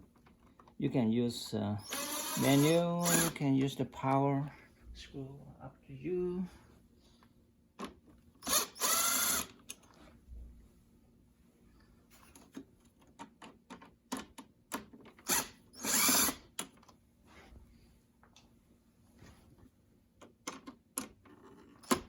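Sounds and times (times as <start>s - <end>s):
power screwdriver whirring: 1.8s - 3.4s, 8.4s - 9.6s, 15.2s - 16.4s.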